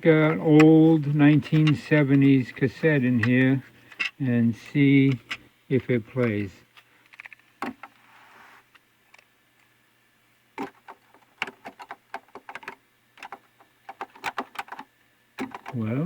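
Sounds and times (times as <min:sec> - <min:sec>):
cassette deck plastic clicks: 0:10.6 - 0:15.8.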